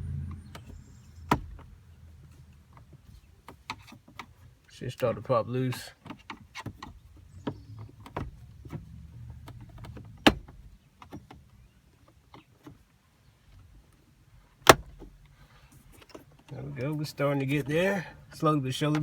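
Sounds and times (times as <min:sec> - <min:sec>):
plastic trim creaking and clicking: 0:05.7 - 0:11.5.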